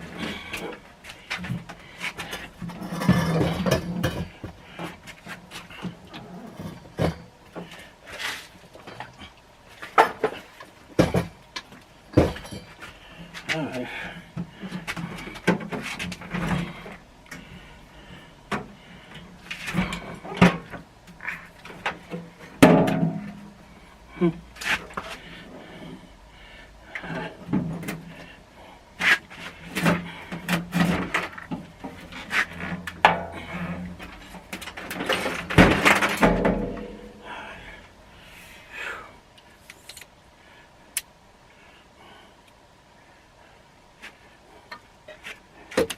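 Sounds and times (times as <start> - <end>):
tool chest drawers knocking and sliding: 29.7 - 37.1.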